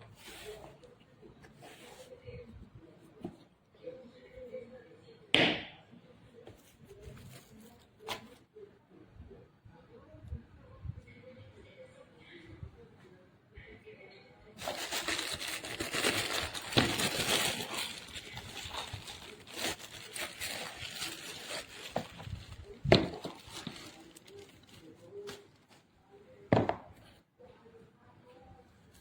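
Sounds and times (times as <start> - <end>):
crinkling rustling handling noise: 14.6 - 25.9.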